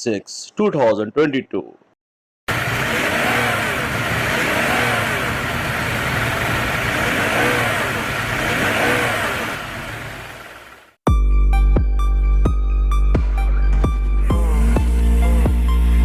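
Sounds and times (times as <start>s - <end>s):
car driving: 2.5s - 11.0s.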